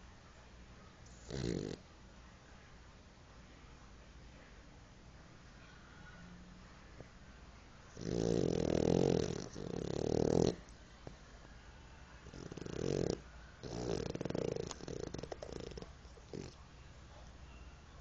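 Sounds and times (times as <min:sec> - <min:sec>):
dog snoring: 0:01.1 - 0:01.8, 0:07.9 - 0:10.6, 0:12.2 - 0:16.6.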